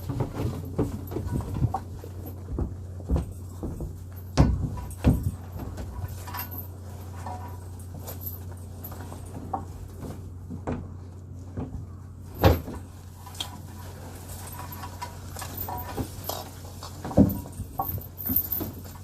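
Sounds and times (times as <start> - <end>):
knocks and clunks: 0.0 - 6.5, 14.7 - 18.9
low machine hum: 0.0 - 19.0.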